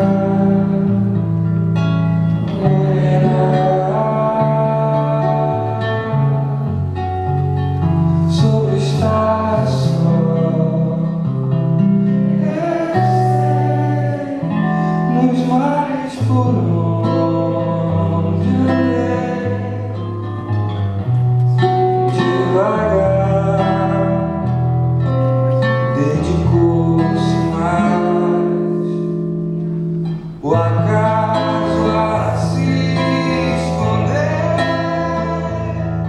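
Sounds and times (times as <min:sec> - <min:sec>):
man singing: 0:00.0 - 0:01.2, 0:02.3 - 0:06.5, 0:08.3 - 0:11.3, 0:12.3 - 0:20.3, 0:21.6 - 0:24.6, 0:25.8 - 0:28.8, 0:30.4 - 0:36.0
acoustic guitar: 0:00.0 - 0:36.0.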